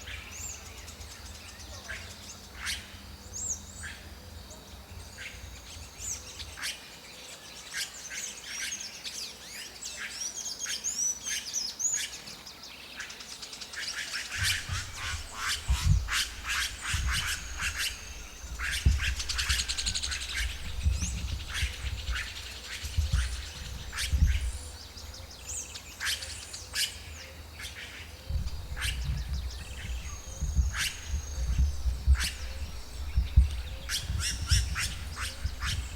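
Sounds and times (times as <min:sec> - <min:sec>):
birds chirping and whistling: 0:14.2 - 0:35.9
low rumble: 0:14.4 - 0:25.3, 0:28.3 - 0:35.9.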